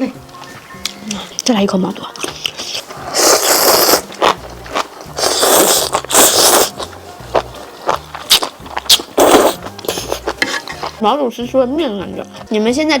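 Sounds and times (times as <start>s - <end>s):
soft background music: 0.0s - 13.0s
crunchy chewing: 2.1s - 11.0s.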